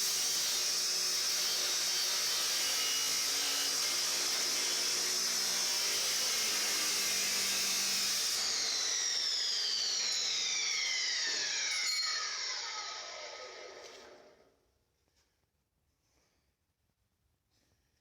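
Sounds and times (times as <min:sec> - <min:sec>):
chop saw cutting metal: 0:00.0 - 0:14.2
saw blade whine spinning down: 0:00.7 - 0:14.4.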